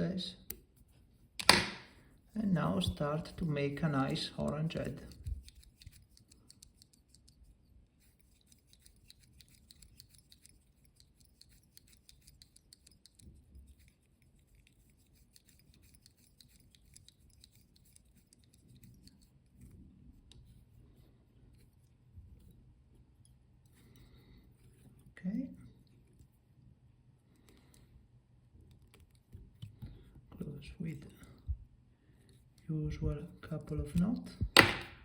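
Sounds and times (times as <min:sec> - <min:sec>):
thread ticking and scratching: 0:02.4 - 0:26.5.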